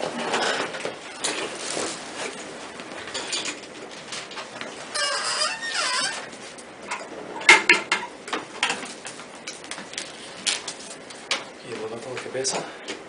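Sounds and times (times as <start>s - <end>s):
short squeaks: 4.9s - 6.3s.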